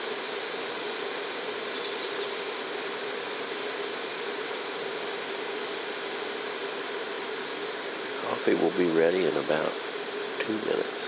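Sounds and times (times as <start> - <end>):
camp stove burner hissing: 0.0 - 11.0.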